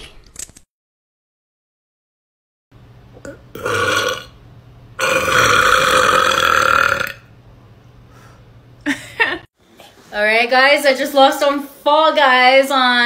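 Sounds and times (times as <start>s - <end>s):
woman burping: 3.2s - 4.3s, 5.0s - 7.2s.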